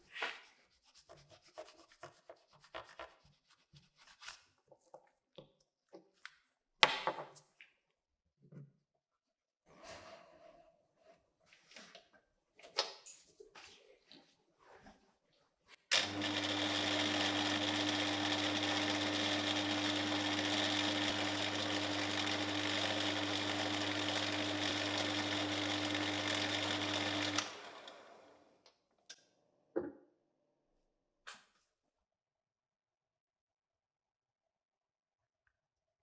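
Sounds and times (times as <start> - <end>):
electric motor humming: 15.9 - 28.3.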